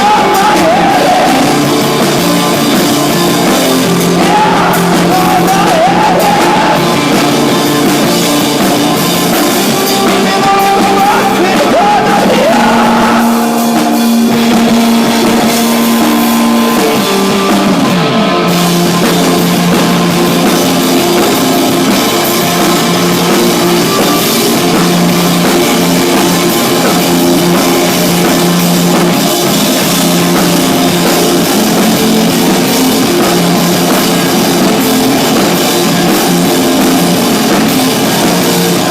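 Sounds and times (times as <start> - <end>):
person singing: 0.0 - 1.7, 4.0 - 7.1, 9.9 - 14.3
drums: 0.0 - 38.9
live rock band playing: 0.0 - 38.9.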